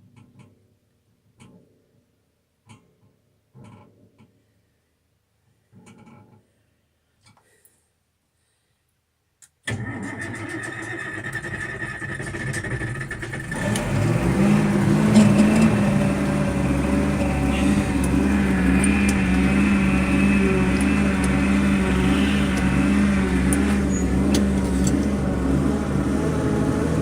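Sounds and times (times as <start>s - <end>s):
starter motor cranking: 9.7s - 27.0s
diesel tractor engine running: 11.2s - 27.0s.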